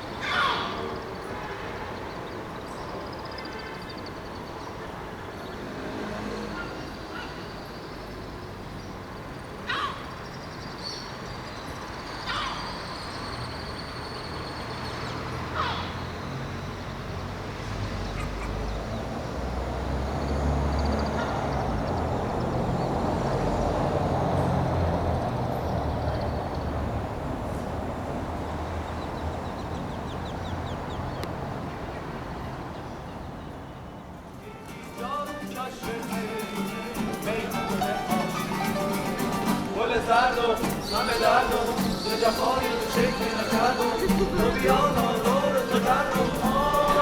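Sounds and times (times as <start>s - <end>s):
falling bird calls: 0.0s - 4.8s, 9.6s - 16.3s, 38.2s - 47.0s.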